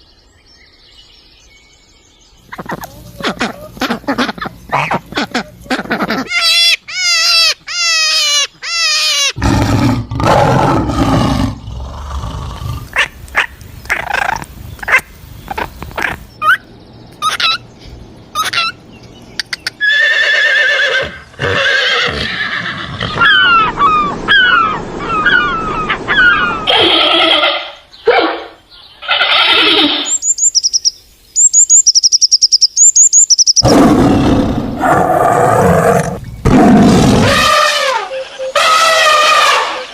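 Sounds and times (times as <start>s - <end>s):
high chirping calls: 0.0s - 9.4s, 12.9s - 20.1s, 23.1s - 33.7s, 37.4s - 39.2s
falling pitched animal calls: 19.8s - 30.2s, 35.7s - 39.9s.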